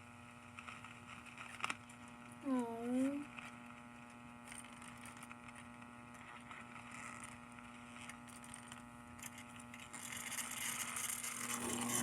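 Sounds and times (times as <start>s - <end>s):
radio speaker hum and hiss: 0.0s - 8.8s.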